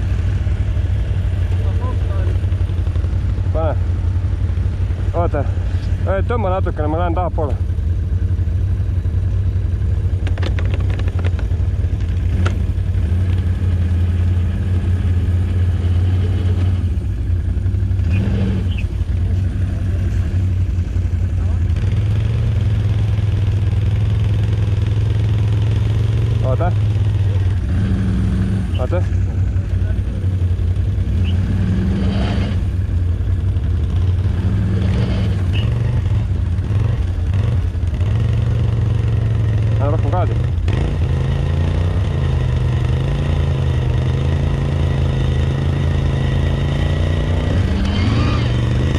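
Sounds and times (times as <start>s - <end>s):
atv engine running: 0.0s - 48.9s
sharp clattering knocks: 10.1s - 13.4s.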